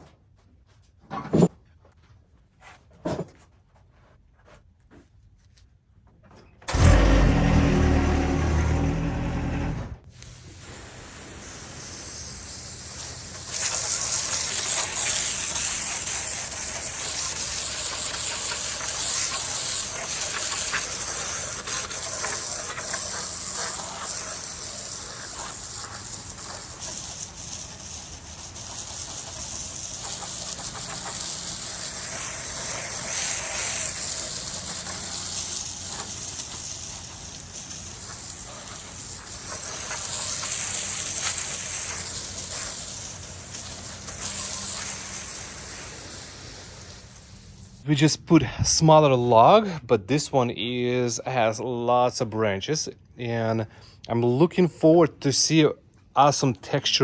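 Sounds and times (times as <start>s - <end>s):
band sawmill sawing log: 6.7s - 46.3s.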